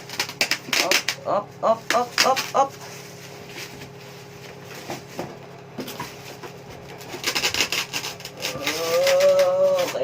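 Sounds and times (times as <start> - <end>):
styrofoam rubbing and scraping: 6.0 - 10.0.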